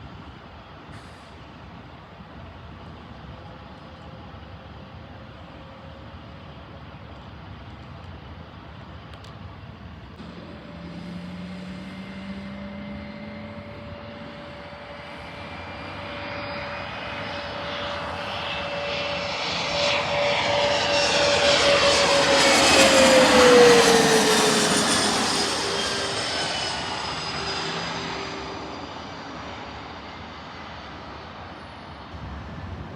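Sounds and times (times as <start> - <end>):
airplane flying low past: 8.5 - 32.9.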